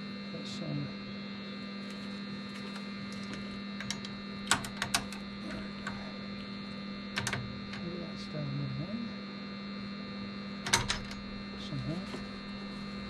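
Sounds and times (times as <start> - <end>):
electrical hum: 0.0 - 13.0.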